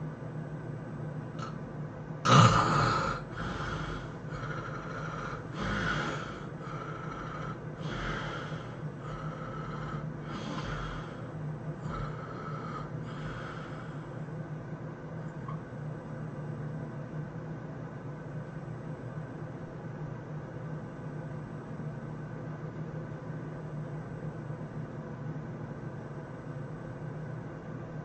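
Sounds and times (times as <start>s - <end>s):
loud snort: 2.3s - 13.9s
man snoring: 2.3s - 14.1s.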